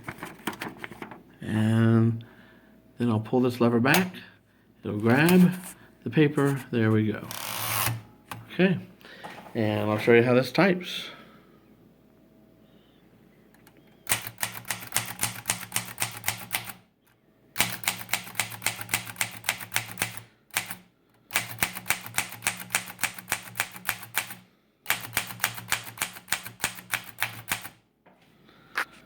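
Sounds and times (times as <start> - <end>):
typewriter key strikes: 14.1 - 16.8, 17.6 - 20.8, 21.4 - 27.8.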